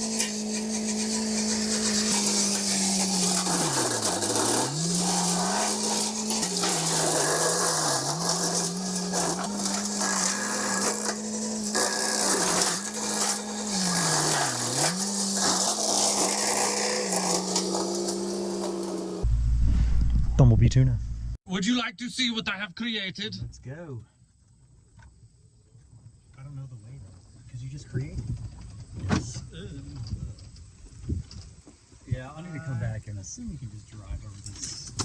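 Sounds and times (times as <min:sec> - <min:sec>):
hiss of cutting: 0:00.0 - 0:19.2.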